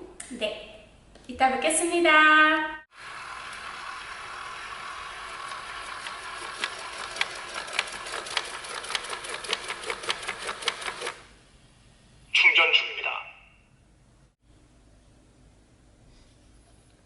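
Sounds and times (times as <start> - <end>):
robot vacuum cleaner whirring: 3.0 - 11.0.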